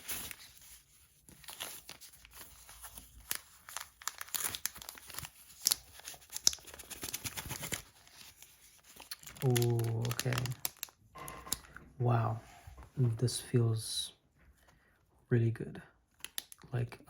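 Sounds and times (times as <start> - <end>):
packaging crinkling: 0.0 - 11.7.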